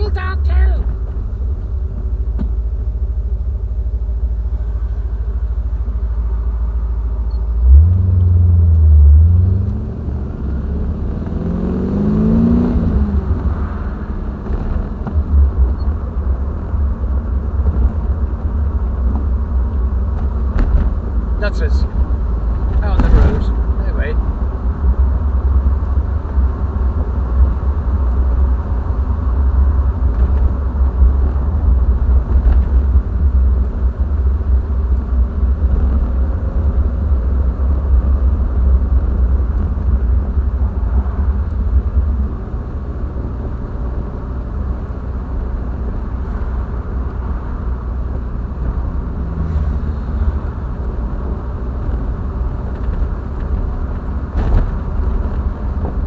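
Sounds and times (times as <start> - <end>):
car engine and road noise: 0.0 - 56.0.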